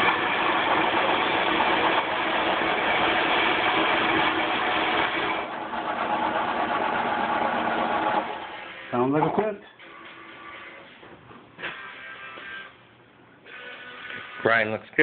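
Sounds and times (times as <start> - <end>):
coffee grinder whirring: 0.0 - 8.7.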